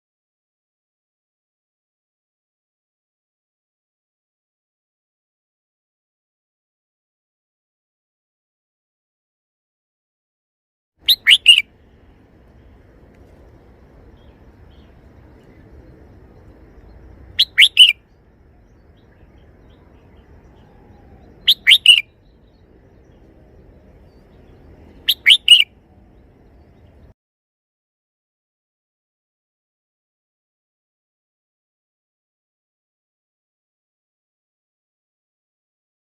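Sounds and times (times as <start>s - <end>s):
faint low background noise: 11.0s - 27.2s.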